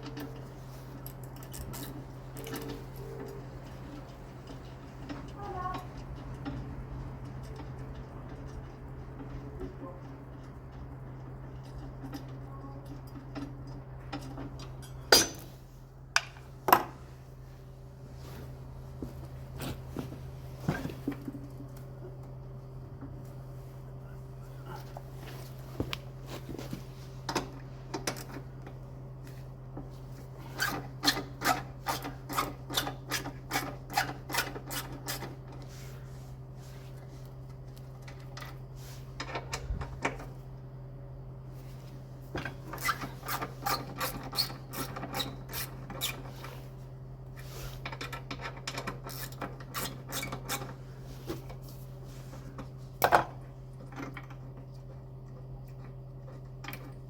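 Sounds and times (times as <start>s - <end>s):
steady low hum: 0.0s - 57.0s.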